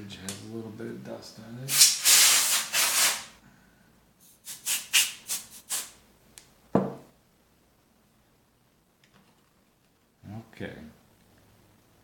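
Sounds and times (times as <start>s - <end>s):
compressed air puffs: 1.7s - 3.3s
object set down with thump: 6.7s - 7.1s.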